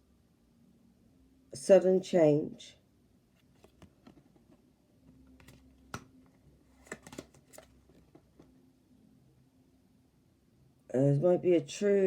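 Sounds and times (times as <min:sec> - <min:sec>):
cards clicking and tapping: 0:03.6 - 0:06.2, 0:06.8 - 0:08.5.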